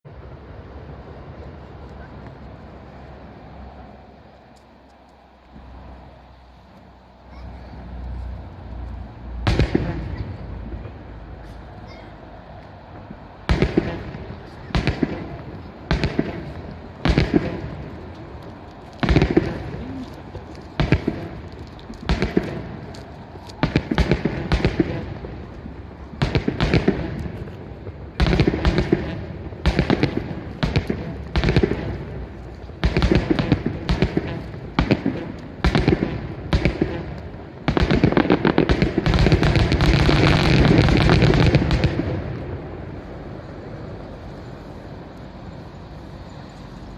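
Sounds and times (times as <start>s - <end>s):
fireworks bursting and crackling: 7.3s - 44.6s.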